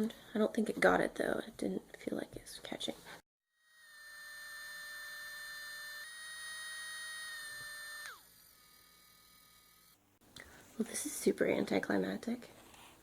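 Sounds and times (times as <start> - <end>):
small motor whining: 3.6 - 10.0.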